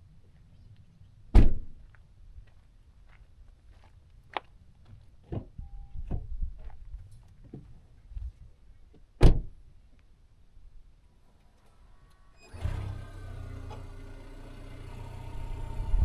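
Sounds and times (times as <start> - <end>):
car door slamming: 1.3 - 1.7, 9.2 - 9.5
short beep: 5.6 - 6.0.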